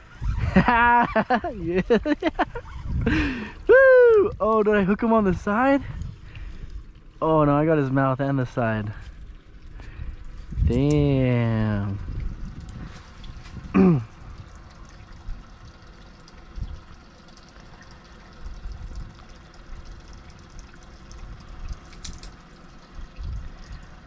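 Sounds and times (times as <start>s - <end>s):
low rumbles: 0.0s - 24.0s
water lapping against a boat: 5.7s - 8.0s, 8.8s - 10.6s, 11.9s - 24.0s
man groaning: 13.7s - 14.2s.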